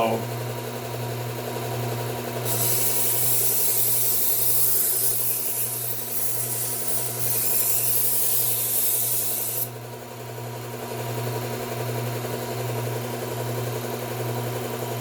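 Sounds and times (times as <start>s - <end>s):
knife grinding on belt grinder: 2.4s - 9.7s.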